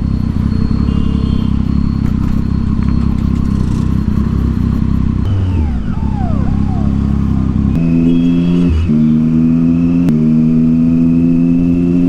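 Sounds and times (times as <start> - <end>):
motorcycle engine through loud exhaust: 0.0 - 12.0.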